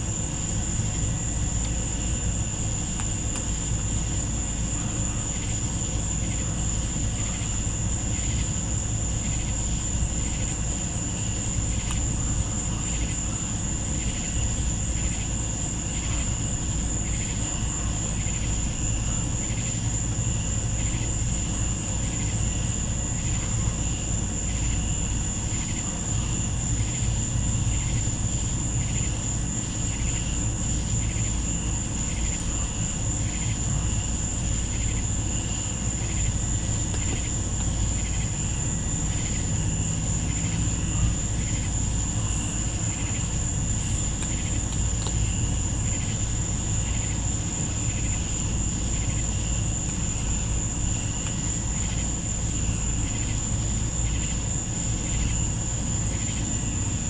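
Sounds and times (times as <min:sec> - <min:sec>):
pulsing insect chorus: 0:00.0 - 0:57.0
insect high trill: 0:24.4 - 0:56.8.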